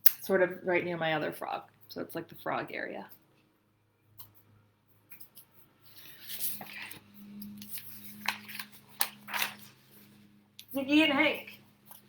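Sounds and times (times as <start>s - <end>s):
low steady hum: 0.3s - 12.0s
scratching and rustling strokes: 3.1s - 12.0s.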